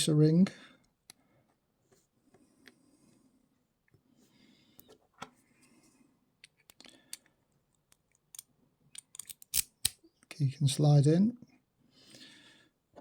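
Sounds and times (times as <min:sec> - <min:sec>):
clicks and metal taps of lock parts: 0:06.4 - 0:10.0.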